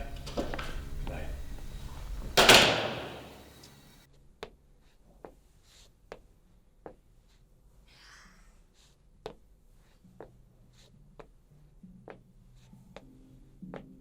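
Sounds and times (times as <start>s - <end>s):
door slamming: 0.1s - 0.9s, 2.3s - 3.6s.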